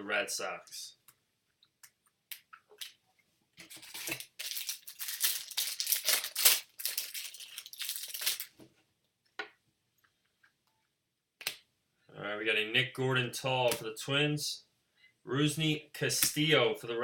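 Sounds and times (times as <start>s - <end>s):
foil wrapper tearing and crinkling: 3.6s - 8.5s.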